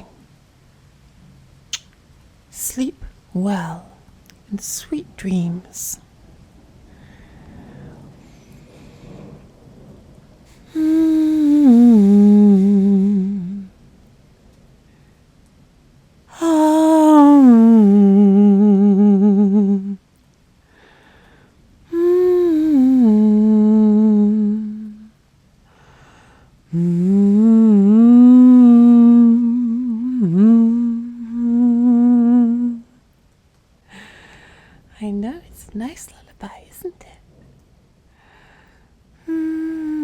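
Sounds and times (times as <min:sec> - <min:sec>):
woman humming a lullaby: 0:10.6 - 0:13.8, 0:16.3 - 0:20.0, 0:21.9 - 0:25.2, 0:26.7 - 0:32.9, 0:39.2 - 0:40.0.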